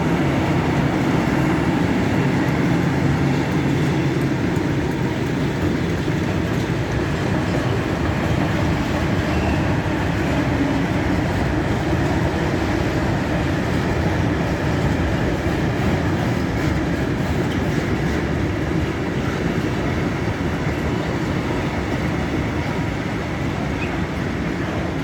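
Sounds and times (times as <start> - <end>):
train wheels rumbling on rails: 0.0 - 25.0.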